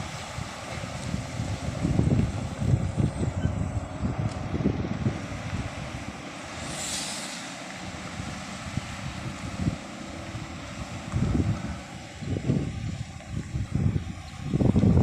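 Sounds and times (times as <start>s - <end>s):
heavy equipment engine running: 0.0s - 15.0s
wind buffeting microphone: 0.0s - 15.0s
brief hiss: 6.5s - 7.6s.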